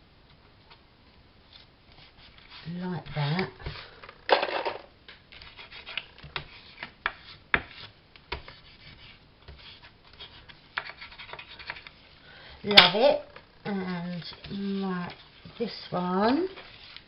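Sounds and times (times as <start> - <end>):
paper rustling: 14.2 - 17.0.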